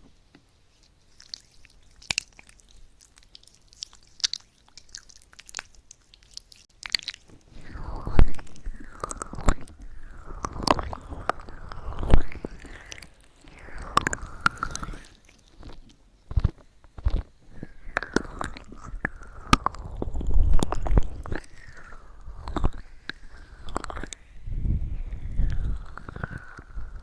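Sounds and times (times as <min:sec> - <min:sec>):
wet mouth clicks and smacks: 0:00.8 - 0:24.2, 0:25.2 - 0:27.0.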